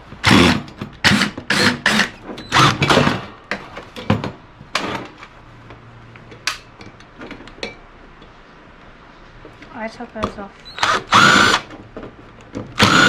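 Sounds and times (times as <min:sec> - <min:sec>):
power drill backing out screw: 0:00.2 - 0:03.2, 0:10.7 - 0:11.7, 0:12.8 - 0:13.0.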